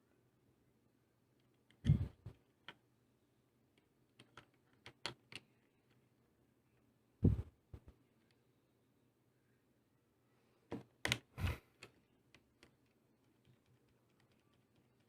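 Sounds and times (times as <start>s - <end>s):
keyboard plastic clicks: 3.8s - 5.5s, 11.0s - 15.0s.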